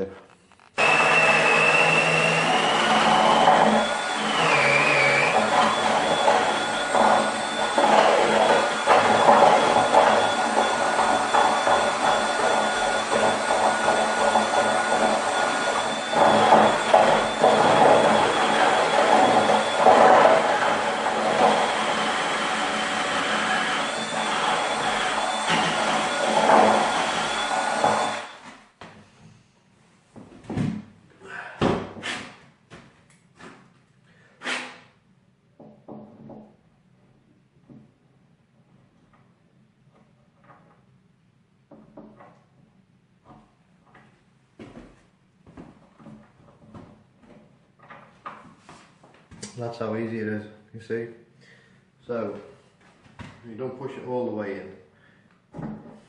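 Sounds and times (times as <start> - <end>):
power drill boring into wood: 0.8 - 28.5.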